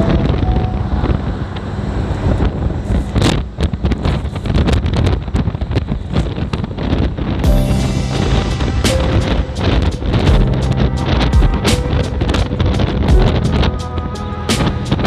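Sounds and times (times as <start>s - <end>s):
road and engine noise: 0.0s - 15.0s
wind buffeting microphone: 0.0s - 15.0s.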